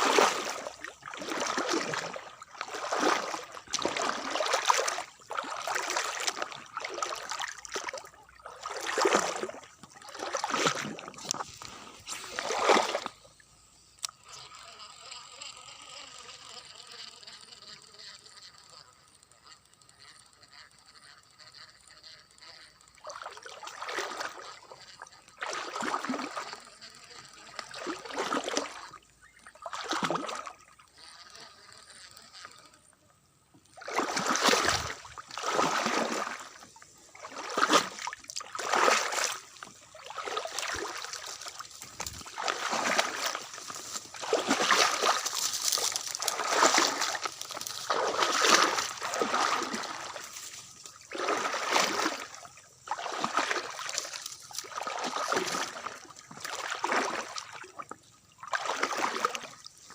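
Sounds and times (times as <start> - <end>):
water splashing and sloshing: 0.0 - 13.4, 23.0 - 26.6, 27.5 - 30.8, 33.7 - 59.9.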